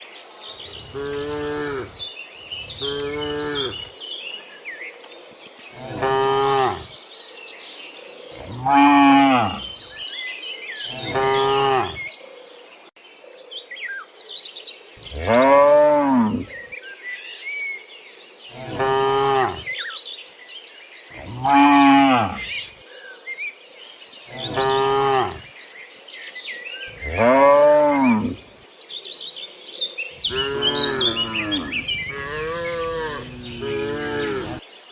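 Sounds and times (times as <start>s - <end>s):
birds chirping: 0.0s - 12.4s, 14.8s - 17.0s, 18.5s - 20.0s, 20.7s - 23.2s, 23.9s - 25.8s, 26.5s - 34.9s
insects chirping: 0.1s - 4.5s, 20.8s - 34.9s
cattle mooing: 0.8s - 2.0s, 2.7s - 3.9s, 5.8s - 6.9s, 8.4s - 9.7s, 10.9s - 12.0s, 18.6s - 19.7s, 24.3s - 25.4s, 27.0s - 28.4s, 30.2s - 34.6s.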